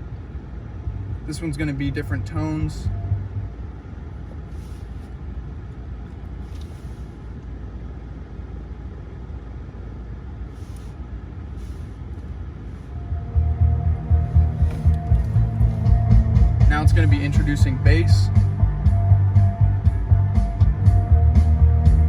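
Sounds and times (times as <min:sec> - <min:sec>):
car cabin rumble: 0:00.0 - 0:22.0
bass-heavy music from car speakers: 0:00.9 - 0:03.6, 0:12.9 - 0:22.0.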